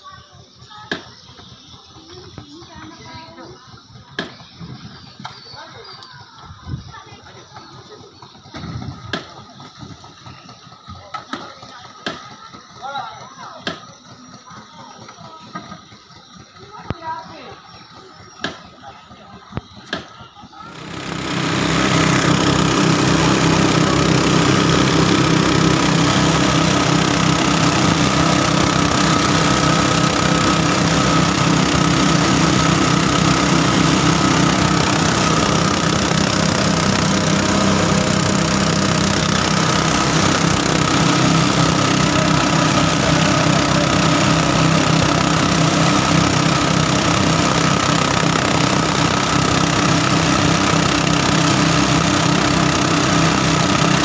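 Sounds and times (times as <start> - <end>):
small engine running: 0.0 - 54.0.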